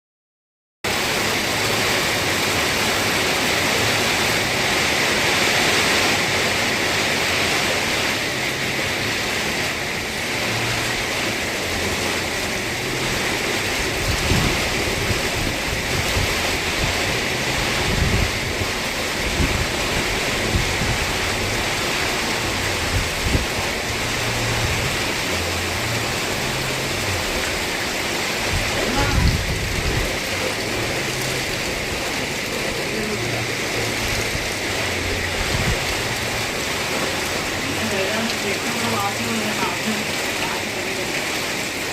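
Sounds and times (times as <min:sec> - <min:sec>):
heavy rain falling: 0:00.8 - 0:41.9
low thumps and rumbles: 0:10.4 - 0:32.6, 0:33.2 - 0:37.8.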